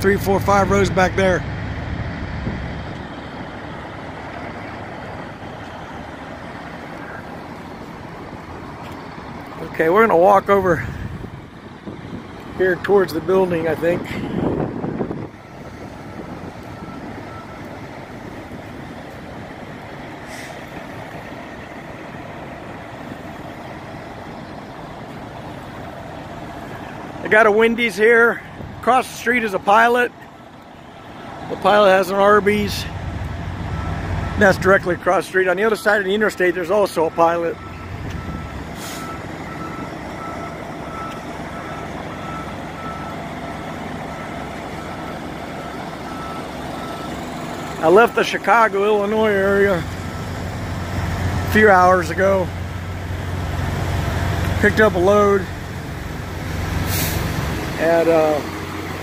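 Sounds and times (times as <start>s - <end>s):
diesel truck engines idling: 0.0s - 59.0s
truck backup alarm beeping: 12.9s - 59.0s
brief air hiss: 20.3s - 20.7s, 38.8s - 39.1s, 56.8s - 57.3s.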